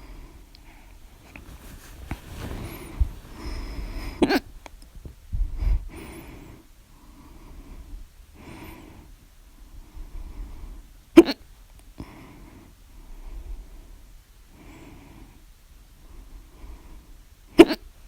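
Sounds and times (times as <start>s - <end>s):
person breathing heavily: 0.0s - 4.6s
hiccups: 4.2s - 4.5s, 11.2s - 11.4s, 17.6s - 17.9s.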